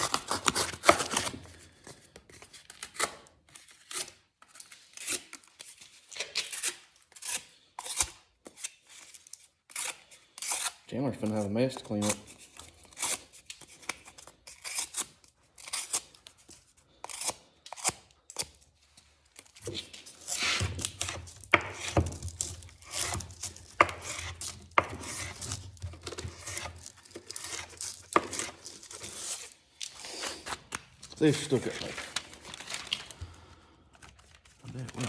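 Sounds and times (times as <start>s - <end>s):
knife slicing cardboard: 0.0s - 1.4s, 19.6s - 30.6s.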